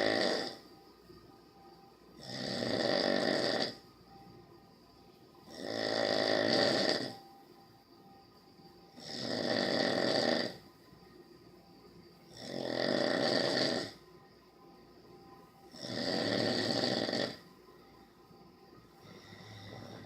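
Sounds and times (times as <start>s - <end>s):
person snoring: 0.0s - 0.7s, 2.2s - 3.8s, 5.4s - 7.2s, 9.0s - 10.6s, 12.3s - 14.0s, 15.7s - 17.4s, 19.0s - 20.0s
quiet breaths: 0.0s - 20.0s.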